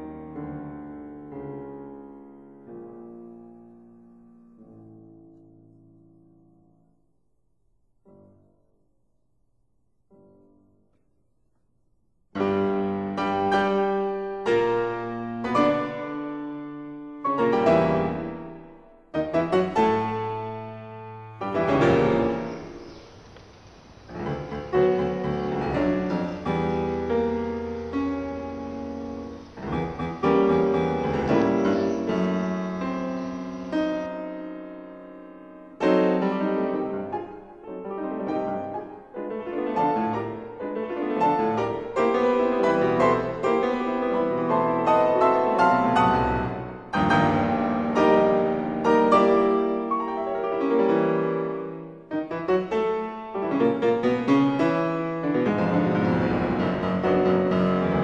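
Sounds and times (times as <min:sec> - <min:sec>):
piano music: 0:00.0 - 0:07.1, 0:12.3 - 0:58.0.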